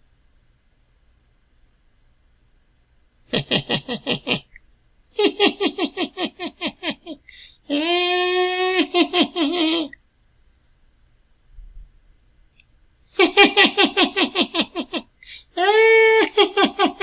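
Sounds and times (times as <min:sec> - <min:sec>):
evil clown laughing: 0:03.3 - 0:04.5, 0:05.1 - 0:10.0, 0:13.1 - 0:17.0.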